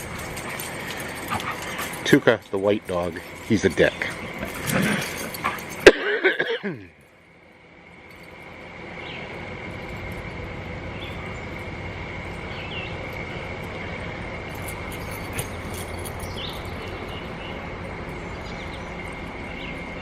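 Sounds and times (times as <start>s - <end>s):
outdoor rumble and hiss: 0.0s - 20.0s
bird chirps: 15.4s - 20.0s.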